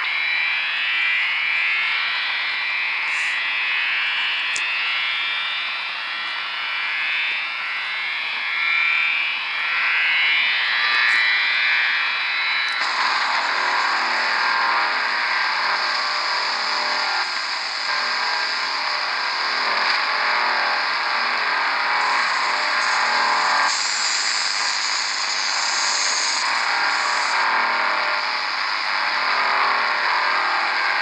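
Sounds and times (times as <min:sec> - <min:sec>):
harsh radio buzzing: 0:03.0 - 0:03.4, 0:12.7 - 0:31.0
radio static: 0:03.0 - 0:03.4, 0:12.8 - 0:31.0.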